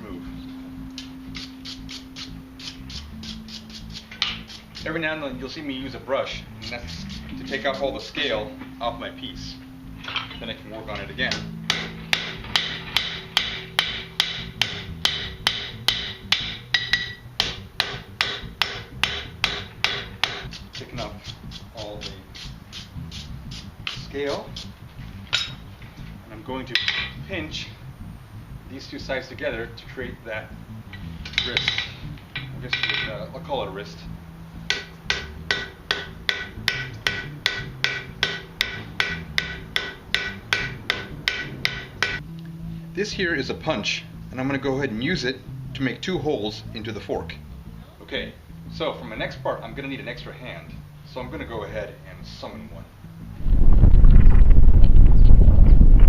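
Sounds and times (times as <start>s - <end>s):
hammer striking steel on anvil: 10.0s - 22.9s, 31.3s - 33.2s, 34.7s - 42.2s.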